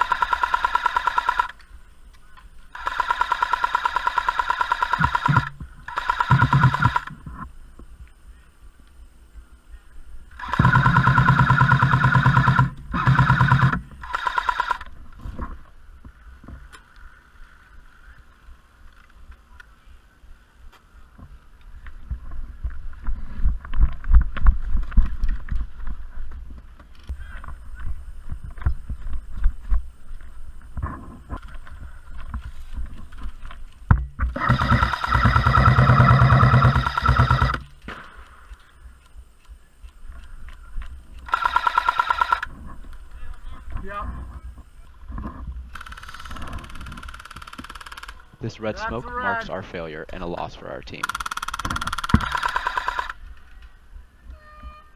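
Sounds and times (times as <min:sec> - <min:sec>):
airsoft machine gun bursts: 0:00.0 - 0:01.6, 0:02.7 - 0:07.2, 0:10.4 - 0:14.9, 0:34.3 - 0:38.0, 0:41.2 - 0:42.5, 0:45.7 - 0:48.2, 0:51.0 - 0:53.2.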